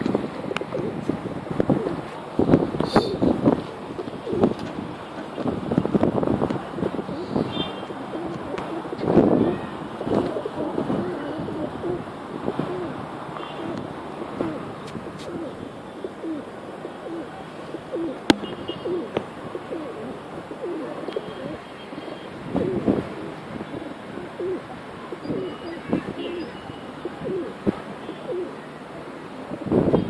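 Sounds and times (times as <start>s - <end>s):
pigeons cooing: 0.5s - 2.1s, 2.8s - 4.8s, 6.8s - 28.6s.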